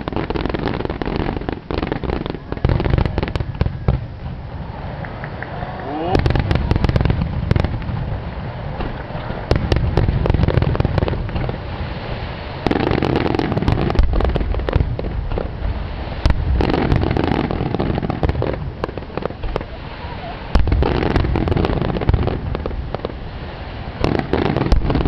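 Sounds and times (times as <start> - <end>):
fireworks booming and crackling: 0.0 - 25.0.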